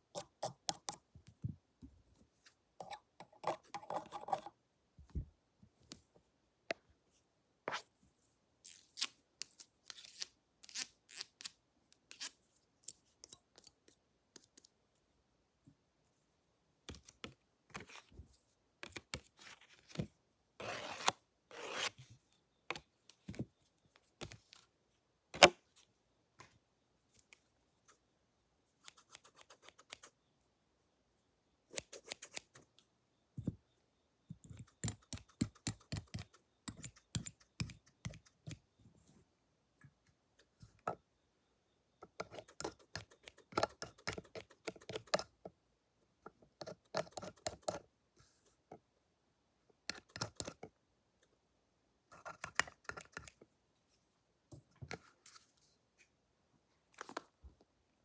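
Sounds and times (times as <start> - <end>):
tools clicking and tapping: 34.4 - 38.6.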